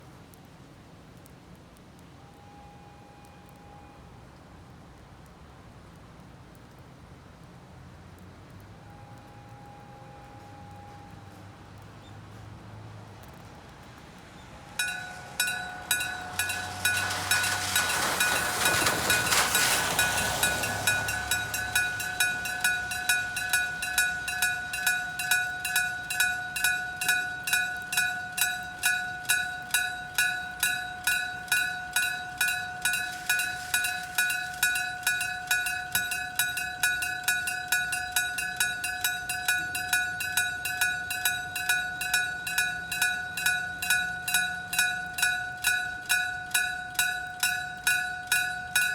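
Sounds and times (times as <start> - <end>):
broad rush of noise: 8.3 - 48.9
railroad crossing bell ringing: 8.8 - 11.4, 14.4 - 48.9.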